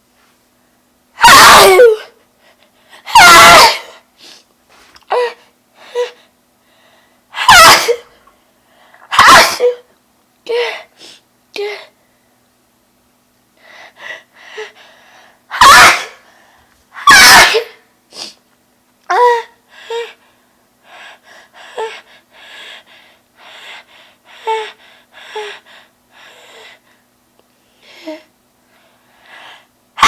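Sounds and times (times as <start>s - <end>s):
woman sneezing: 7.4s - 8.2s, 9.1s - 9.8s.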